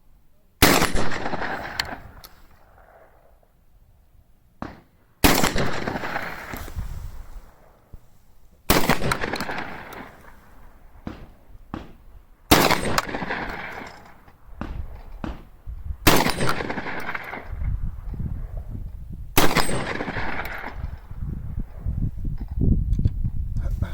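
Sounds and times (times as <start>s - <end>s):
shotgun shots with echo: 0.6s - 2.2s, 4.6s - 6.8s, 8.7s - 14.0s, 14.6s - 17.6s, 19.4s - 20.9s.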